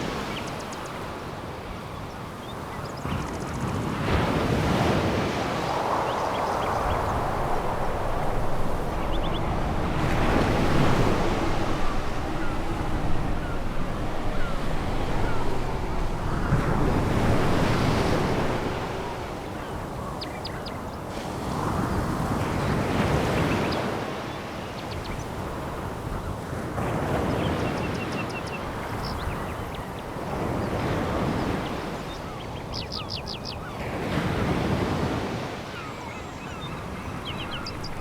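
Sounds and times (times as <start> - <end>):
waves breaking on pebble beach: 3.7 - 24.4.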